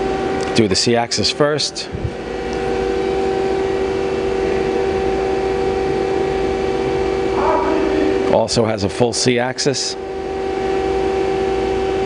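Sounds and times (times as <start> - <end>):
machine tool humming and whining: 3.0 - 8.7.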